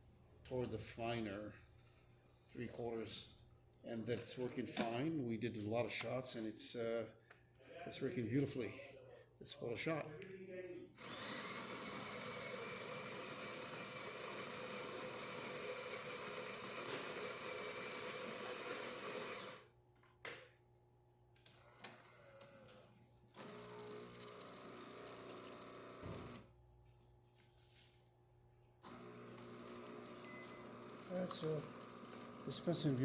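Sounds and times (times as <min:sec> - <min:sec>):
brew pump humming: 0:11.0 - 0:19.7, 0:23.4 - 0:26.4, 0:28.8 - 0:33.0
coffee grinder running: 0:11.0 - 0:19.7, 0:21.6 - 0:26.5, 0:28.8 - 0:33.0.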